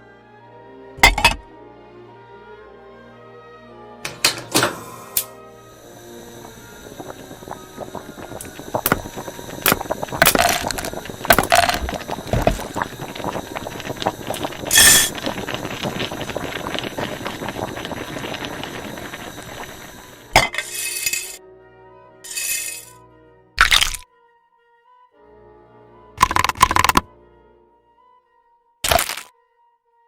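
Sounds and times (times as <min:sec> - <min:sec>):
hissing burst: 0:04.7 - 0:21.4
dense crackling and clicking: 0:06.4 - 0:20.3
hard objects clinking: 0:08.4 - 0:13.4, 0:20.4 - 0:21.4, 0:22.3 - 0:22.9.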